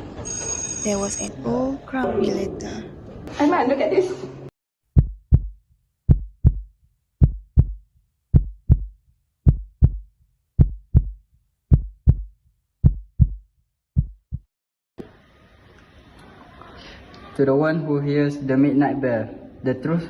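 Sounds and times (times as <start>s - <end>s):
heartbeat double thumps: 4.9s - 14.5s.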